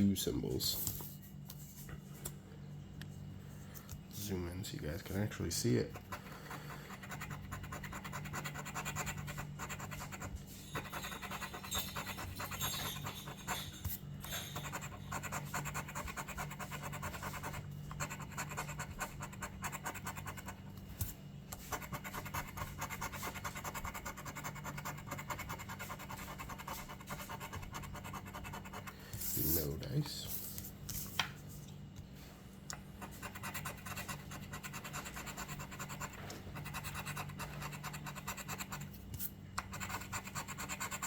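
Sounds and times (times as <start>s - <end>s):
scratching lottery ticket coating: 5.9s - 13.6s, 14.5s - 20.6s, 21.6s - 29.7s, 33.1s - 39.0s.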